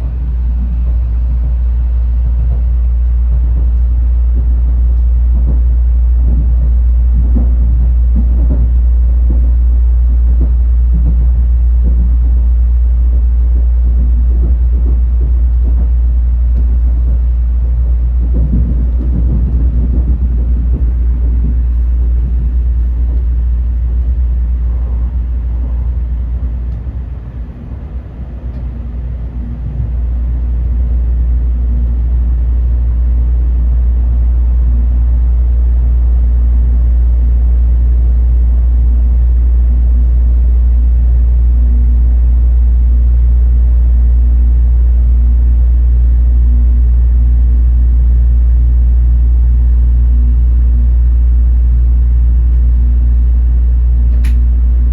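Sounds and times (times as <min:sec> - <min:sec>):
low rumble inside train car: 0:00.0 - 0:54.9.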